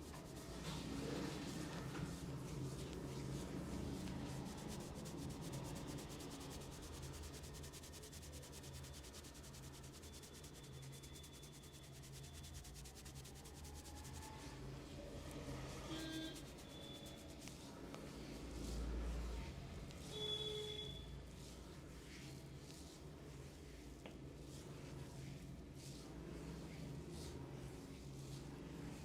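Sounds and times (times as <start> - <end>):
hands rubbing skin: 0.0 - 14.5, 15.9 - 17.5.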